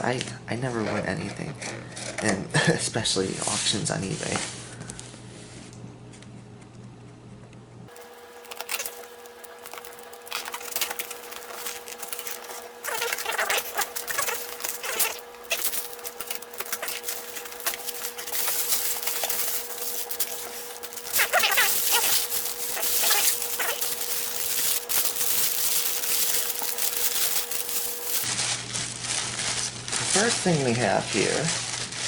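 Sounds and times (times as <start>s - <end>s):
faint steady hum: 4.6s - 28.3s
packaging rustling and crinkling: 7.9s - 32.0s.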